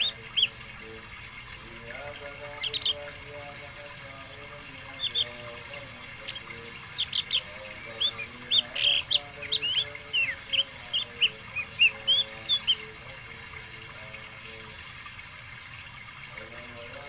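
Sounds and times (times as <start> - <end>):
songbird chirping and whistling: 6.2 - 12.9.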